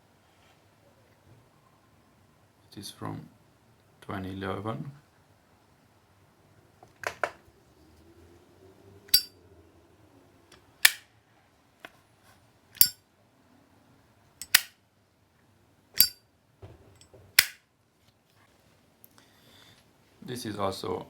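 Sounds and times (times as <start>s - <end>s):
lighter lid clicking open and shut: 12.8s - 13.0s, 14.4s - 14.7s, 16.0s - 16.2s.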